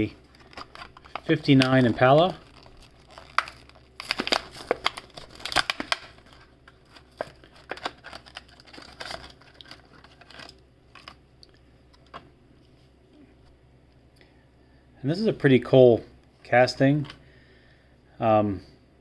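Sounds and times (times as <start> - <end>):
blister pack crinkling and tearing: 0.0 - 11.2.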